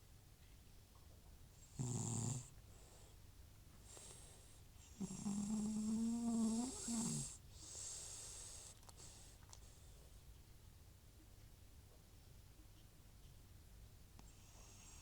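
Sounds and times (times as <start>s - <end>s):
cat snoring: 1.7s - 2.5s, 4.8s - 9.3s, 14.3s - 15.0s.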